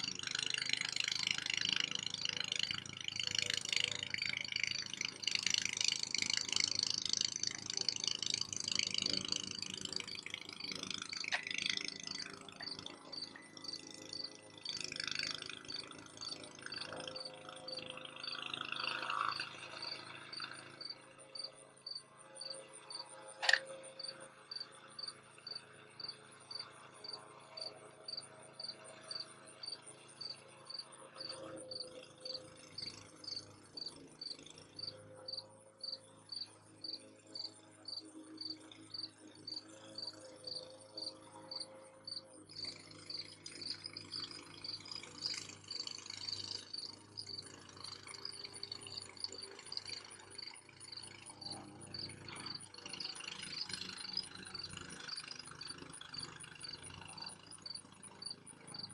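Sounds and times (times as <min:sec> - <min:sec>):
crickets chirping: 0:00.0 - 0:58.9
faint high insect trill: 0:00.0 - 0:58.9
sharp click: 0:23.4 - 0:23.7.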